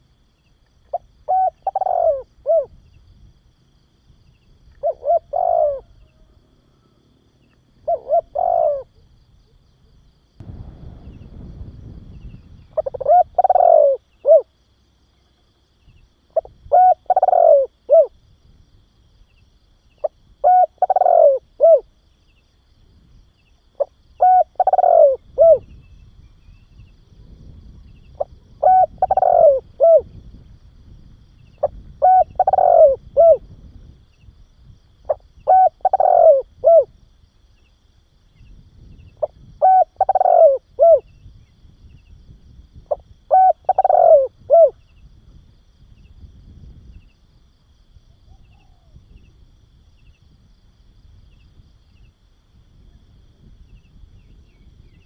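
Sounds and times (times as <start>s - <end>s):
dove cooing: 0.9s - 2.8s, 4.7s - 7.0s, 7.8s - 9.0s, 12.8s - 14.5s, 16.3s - 18.2s, 20.0s - 21.9s, 23.8s - 25.8s, 28.1s - 30.2s, 31.6s - 33.5s, 35.1s - 36.9s, 39.2s - 41.1s, 42.9s - 44.8s.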